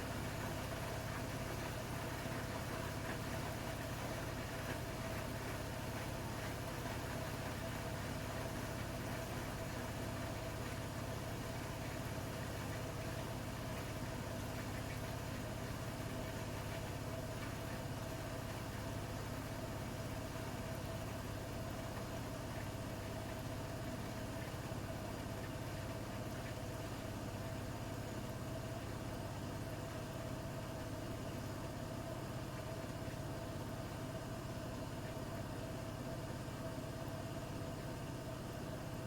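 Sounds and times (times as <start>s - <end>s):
washing machine motor hum: 0.0s - 39.0s.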